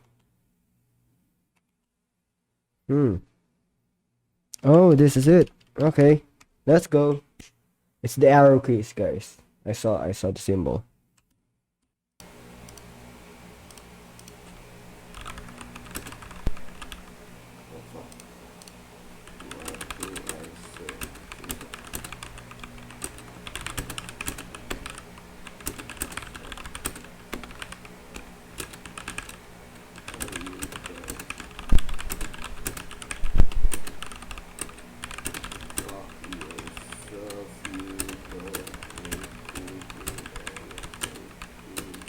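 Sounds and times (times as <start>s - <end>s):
mechanical keyboard typing: 15.1s - 17.0s, 18.6s - 42.0s.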